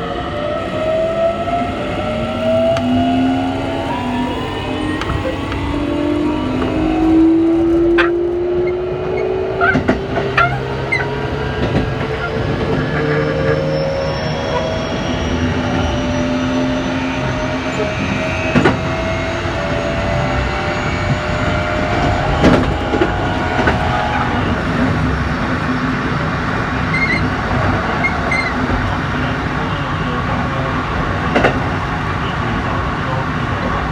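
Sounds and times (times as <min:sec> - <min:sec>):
train motors whining: 0:00.0 - 0:32.8
rail rumble: 0:00.0 - 0:33.9
clicks from the track: 0:31.2 - 0:32.2.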